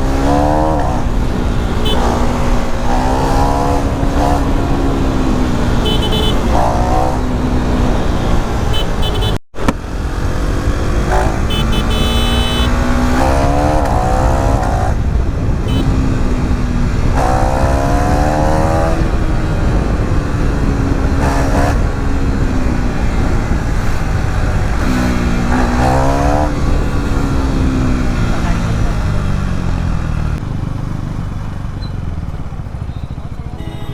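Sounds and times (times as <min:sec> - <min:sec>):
motorcycle engine accelerating: 0:00.0 - 0:33.9
wind rumble: 0:12.7 - 0:30.4.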